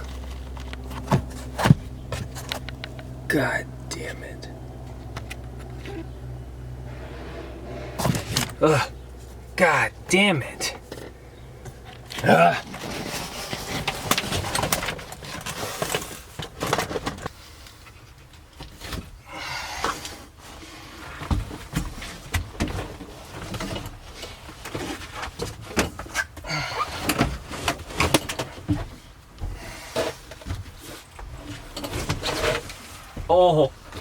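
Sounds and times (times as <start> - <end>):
car parts knocking and clicking: 0.0 - 3.2.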